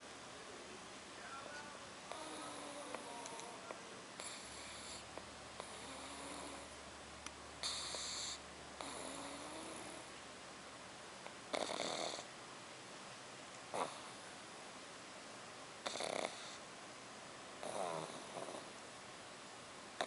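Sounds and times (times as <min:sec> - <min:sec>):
puppy snoring: 0:02.1 - 0:06.8, 0:07.6 - 0:10.1, 0:11.5 - 0:12.3, 0:13.7 - 0:14.2, 0:15.8 - 0:16.7, 0:17.6 - 0:18.8.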